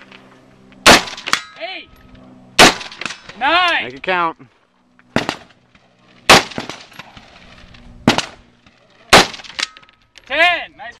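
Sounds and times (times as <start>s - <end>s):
rifle shots: 0.8s - 1.4s, 2.6s - 3.4s, 5.1s - 5.6s, 6.2s - 6.9s, 8.0s - 8.4s, 9.1s - 9.7s.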